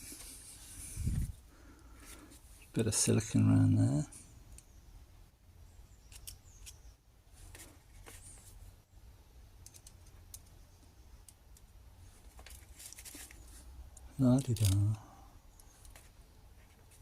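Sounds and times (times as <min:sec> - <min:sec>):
faint clicks of small parts handled: 0:06.0 - 0:06.8, 0:09.6 - 0:10.6, 0:11.2 - 0:17.0.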